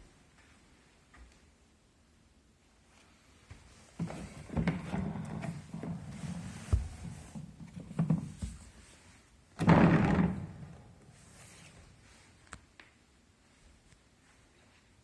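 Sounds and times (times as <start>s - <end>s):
plastic toolbox knocking and clattering: 4.0s - 8.8s, 9.6s - 10.8s
toolbox thud: 9.6s - 11.0s.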